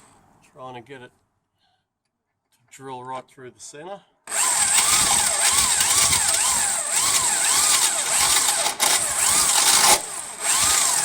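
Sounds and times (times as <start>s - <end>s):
electric drill boring into steel: 4.3s - 11.0s.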